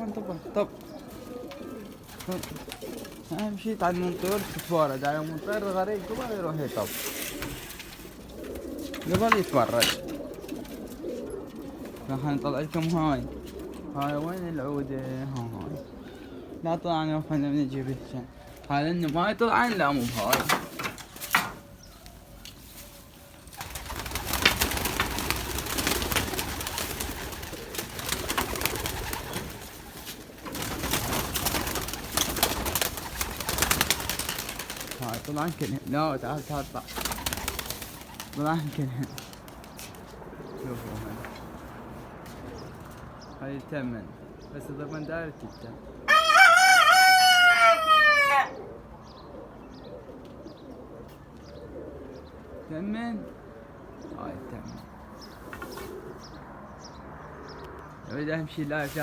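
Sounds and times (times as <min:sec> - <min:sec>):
pigeons cooing: 0:00.0 - 0:43.3, 0:44.1 - 0:59.0
rooster crowing: 0:46.1 - 0:48.6.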